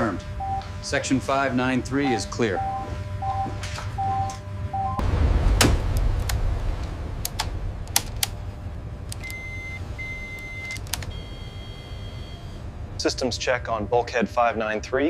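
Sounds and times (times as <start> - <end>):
long electronic beeps: 0.0 - 5.0, 9.2 - 12.7
machinery rumble: 0.0 - 15.0
sharp clicks: 5.6 - 8.4, 10.4 - 11.1.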